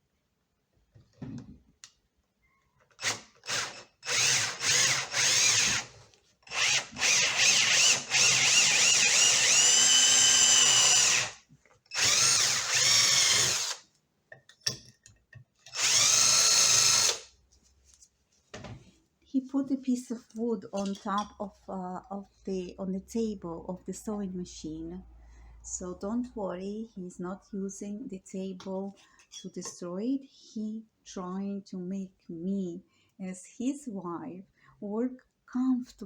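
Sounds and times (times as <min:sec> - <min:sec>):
power tool whining on metal: 0:02.9 - 0:13.8, 0:15.7 - 0:17.2.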